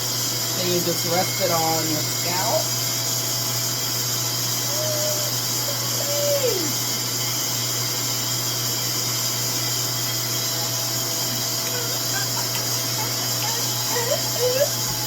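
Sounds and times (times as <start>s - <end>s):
hair dryer motor whirring: 0.0s - 15.0s.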